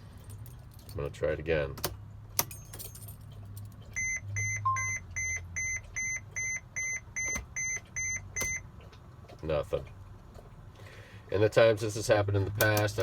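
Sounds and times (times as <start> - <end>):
low steady hum: 0.0 - 13.0
vehicle warning chime beeping: 3.9 - 8.7.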